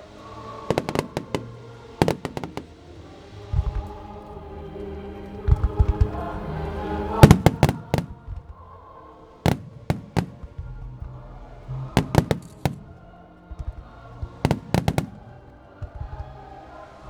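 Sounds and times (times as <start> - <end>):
firework shells bursting: 0.1 - 4.2, 7.1 - 8.5, 9.4 - 16.4.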